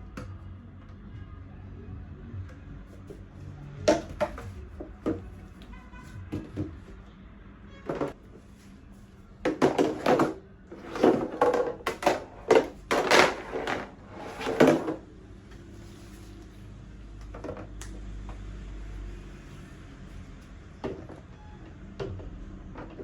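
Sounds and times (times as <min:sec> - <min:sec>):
high chair parts knocking: 0:09.5 - 0:15.0.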